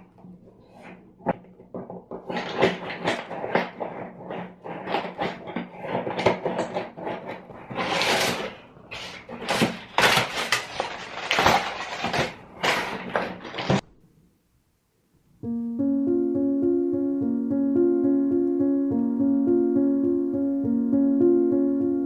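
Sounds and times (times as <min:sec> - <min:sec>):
knocks and clatters of handling: 0:00.0 - 0:13.9.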